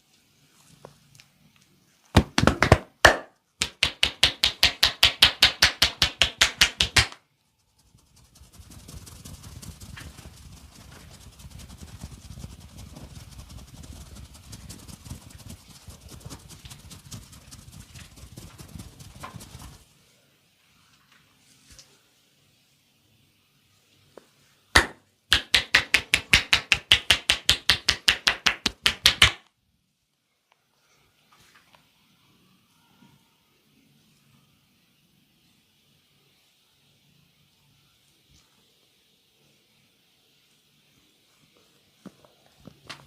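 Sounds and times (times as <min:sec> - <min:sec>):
hands slapping on body: 0:02.2 - 0:07.2, 0:24.8 - 0:29.5
hand rubbing: 0:05.9 - 0:19.9.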